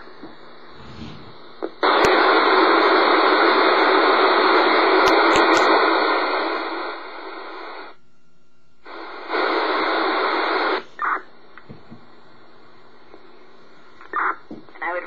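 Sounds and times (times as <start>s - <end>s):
radio static hiss: 0.0s - 8.0s, 8.8s - 15.0s
brief burst of noise: 0.8s - 1.4s.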